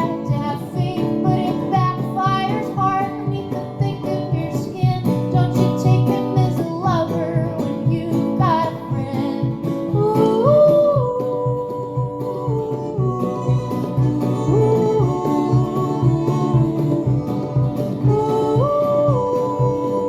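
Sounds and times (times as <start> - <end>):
acoustic guitar: 0.0 - 20.0
woman singing: 0.0 - 20.0.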